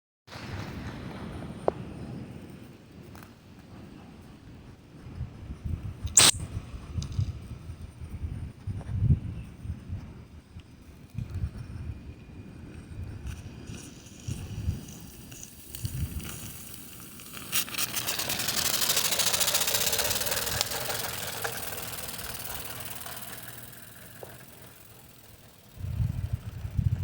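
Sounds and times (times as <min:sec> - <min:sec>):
steam engine chuffing hiss: 0:14.8 - 0:26.4.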